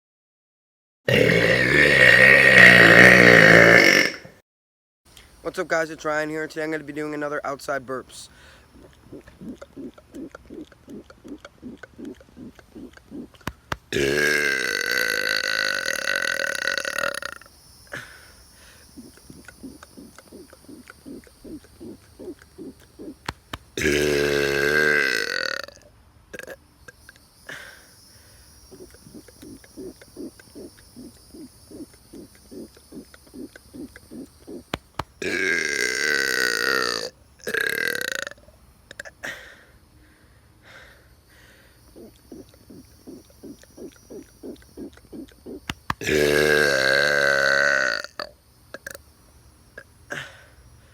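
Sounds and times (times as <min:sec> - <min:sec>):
man burping loudly: 0:01.1 - 0:04.4, 0:08.8 - 0:17.4, 0:23.8 - 0:26.6, 0:35.2 - 0:38.4, 0:46.0 - 0:49.0
soft rhythmic pulses: 0:05.1 - 0:14.2, 0:17.0 - 0:24.0, 0:26.8 - 0:35.4, 0:41.8 - 0:46.2
sharp clicks: 0:08.8 - 0:13.9, 0:19.0 - 0:23.8, 0:28.8 - 0:35.2, 0:42.1 - 0:46.1.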